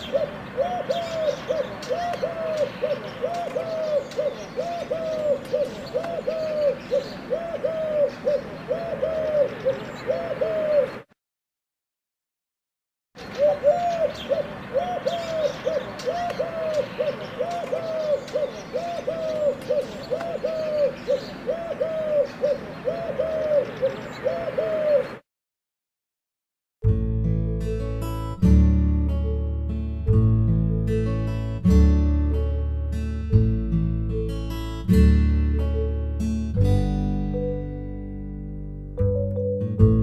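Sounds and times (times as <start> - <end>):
pigeon cooing: 0.0 - 11.1, 13.2 - 25.2.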